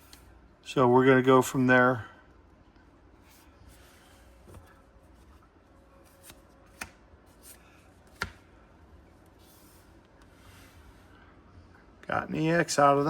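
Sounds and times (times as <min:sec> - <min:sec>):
trading cards clicking and rustling: 0:06.0 - 0:08.4.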